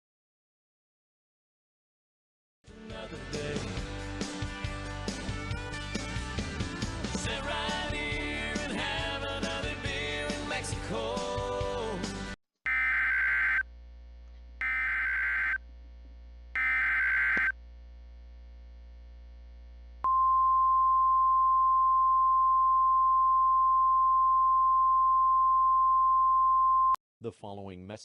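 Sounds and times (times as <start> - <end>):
digital data tone bursts: 12.7 - 13.6, 14.6 - 15.6, 16.6 - 17.5
steady attention tone: 12.7 - 13.6, 14.6 - 15.6, 16.6 - 17.6.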